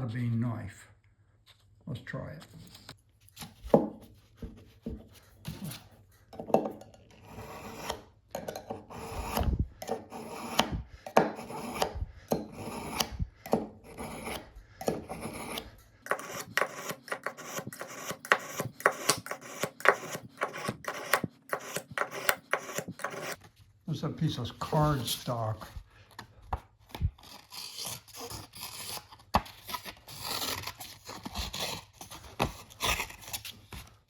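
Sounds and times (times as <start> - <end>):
knife rasping on sharpener: 7.2 - 8.1, 8.7 - 23.4, 27.3 - 29.1.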